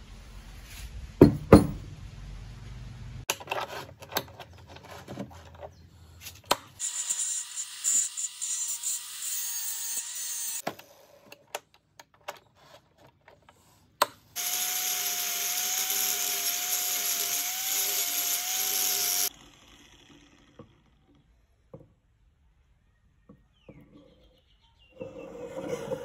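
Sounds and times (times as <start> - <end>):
power tool cutting metal: 6.8 - 10.6, 14.4 - 20.6.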